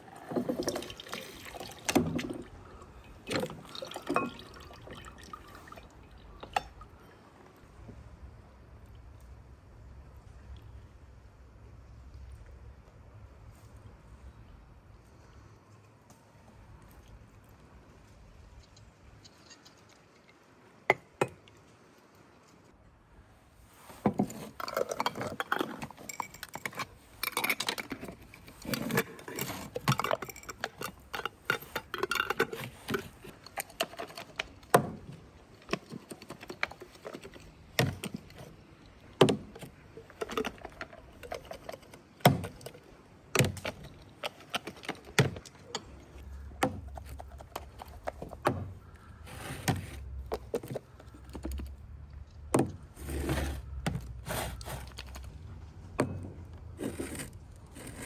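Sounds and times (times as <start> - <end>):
kitchenware clinking and knocking: 3.4 - 4.6.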